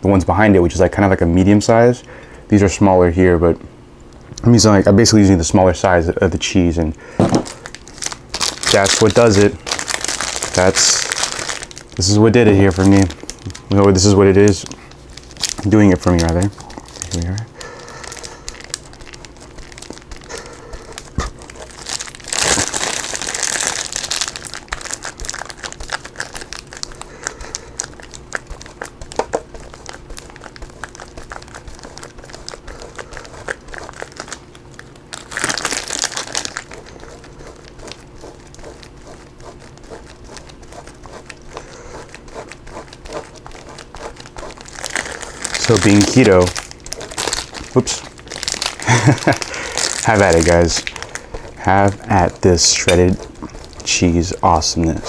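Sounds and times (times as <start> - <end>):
cheese grater rasping scrapes: 35.6 - 48.0, 48.9 - 55.0.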